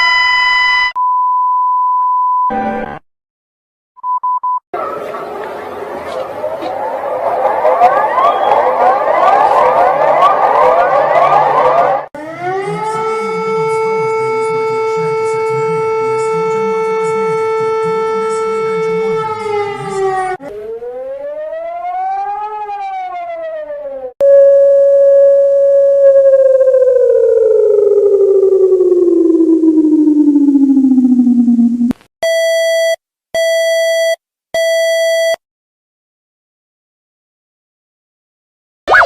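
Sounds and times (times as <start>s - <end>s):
siren winding up and down: 0.0s - 1.0s, 6.5s - 32.0s
rapid rising warning sweep: 4.8s - 21.4s, 24.6s - 31.9s.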